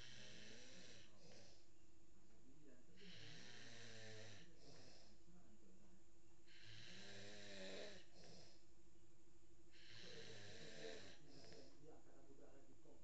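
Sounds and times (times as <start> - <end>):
baby snoring: 0.0 - 1.6, 3.0 - 5.2, 6.5 - 8.6, 9.7 - 11.8.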